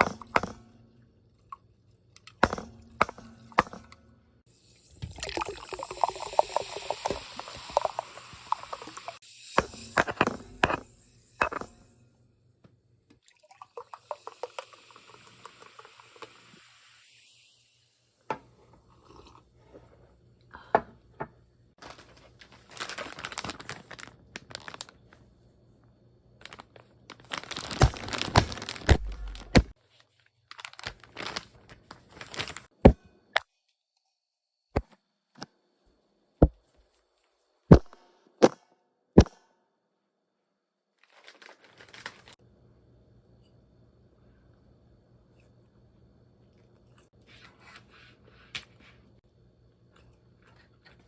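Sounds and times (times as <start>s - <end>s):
packaging crinkling and tearing: 21.8s - 25.2s, 26.4s - 32.7s, 41.0s - 42.4s.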